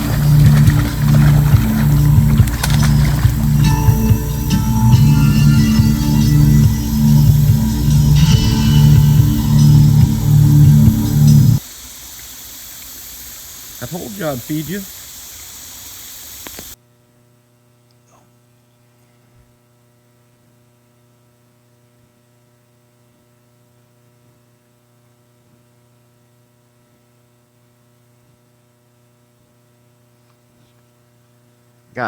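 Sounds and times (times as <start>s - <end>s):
loud rushing hiss: 0.0s - 16.8s.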